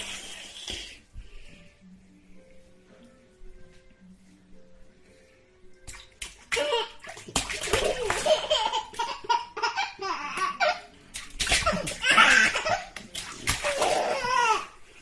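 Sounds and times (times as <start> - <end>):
water splashing in bath: 5.8 - 9.4, 10.2 - 14.7.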